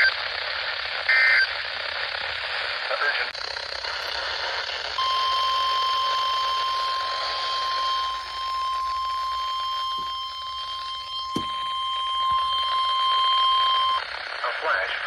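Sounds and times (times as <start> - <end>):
radio static hiss: 0.0 - 11.7, 12.3 - 15.0
steady alarm tone: 5.0 - 14.4.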